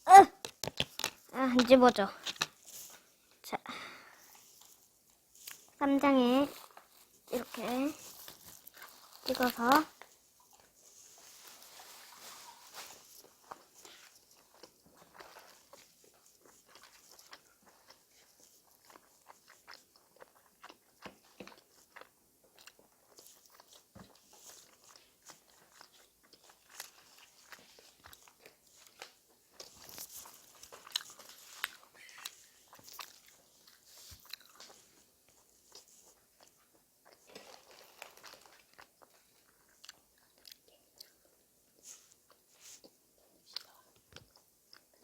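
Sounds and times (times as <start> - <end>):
person chewing crisp food: 2.2 - 3.1, 6.5 - 45.0.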